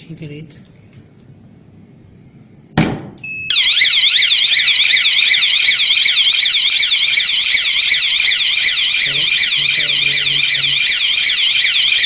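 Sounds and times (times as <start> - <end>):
sharp knock: 2.8 - 3.2
electronic siren warbling: 3.3 - 12.0.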